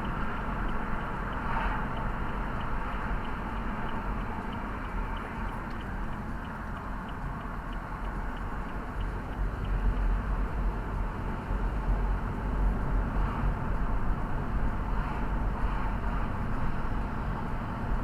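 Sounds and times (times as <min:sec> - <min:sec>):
turn signal ticking: 0:00.0 - 0:11.9
road and engine rumble: 0:00.0 - 0:18.0.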